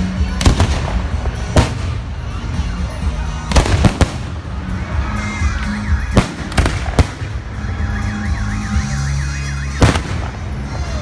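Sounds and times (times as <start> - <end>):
low music: 0.0 - 11.0
fireworks bangs: 0.4 - 2.4, 3.5 - 5.0, 5.8 - 7.6, 9.8 - 11.0.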